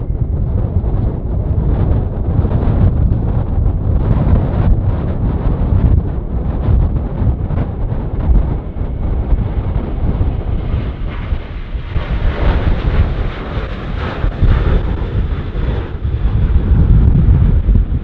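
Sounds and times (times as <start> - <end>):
jet engines: 0.0 - 18.0
wind buffeting microphone: 0.0 - 18.0.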